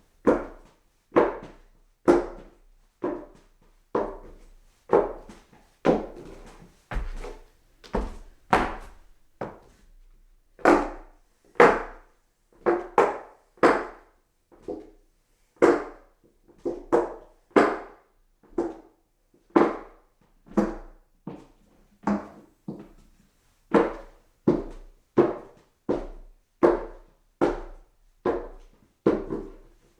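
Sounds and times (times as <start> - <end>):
footsteps on hollow wooden stairs: 4.0 - 9.8.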